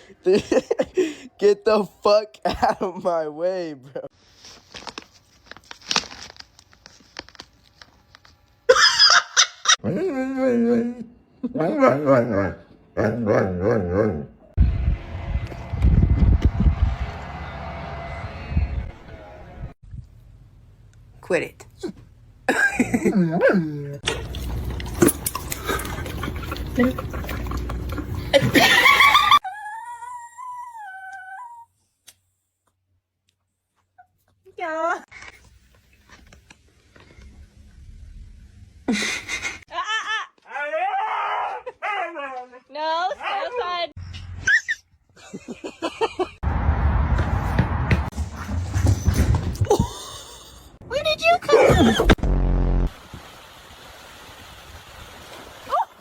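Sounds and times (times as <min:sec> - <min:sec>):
soft rustling and crinkling: 0:04.2 - 0:08.6
background noise: 0:19.0 - 0:25.0
loud rough burst: 0:52.1 - 0:53.0.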